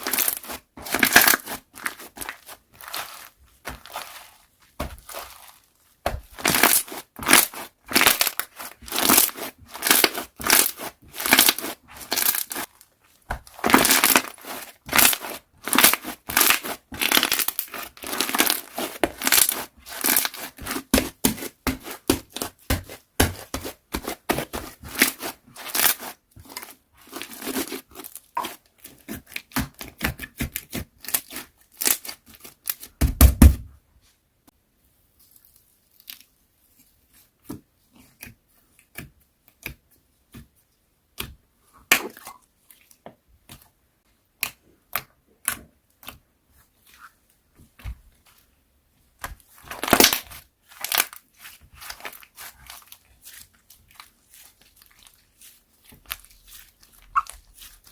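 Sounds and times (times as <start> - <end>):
slime squeezed by hand: 56.9 - 57.8.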